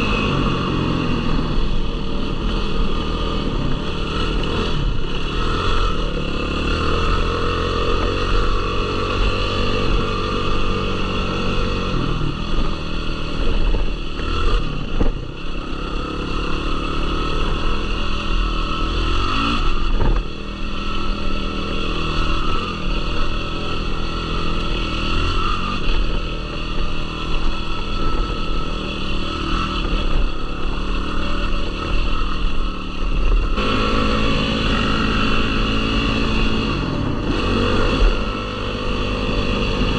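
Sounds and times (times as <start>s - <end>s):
quad engine revving: 0.0s - 39.9s.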